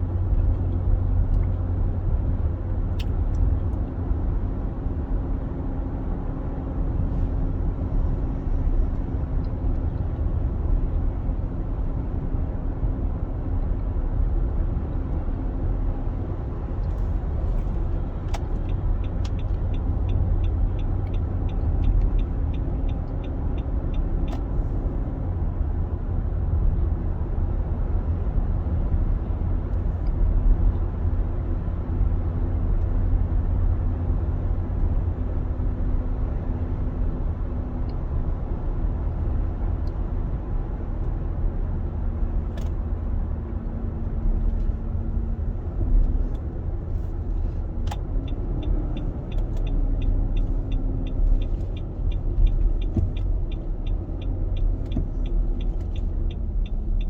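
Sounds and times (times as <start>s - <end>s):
engine low rumble: 0.0s - 57.0s
light ticks: 16.8s - 24.5s, 46.0s - 57.0s.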